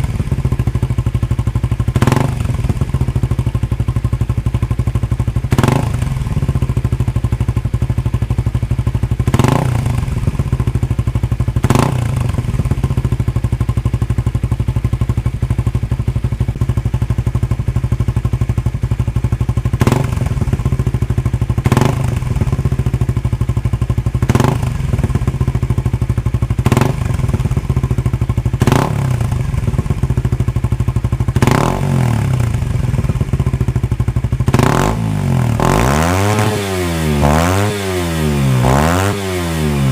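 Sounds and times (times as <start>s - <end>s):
motorcycle engine idling: 0.0s - 39.9s
engine revving: 2.0s - 2.9s, 5.5s - 6.5s, 9.3s - 10.5s, 11.6s - 12.8s, 19.8s - 20.6s, 21.6s - 22.6s, 24.2s - 25.3s, 26.6s - 27.7s, 28.6s - 30.1s, 31.4s - 33.4s, 34.4s - 39.9s.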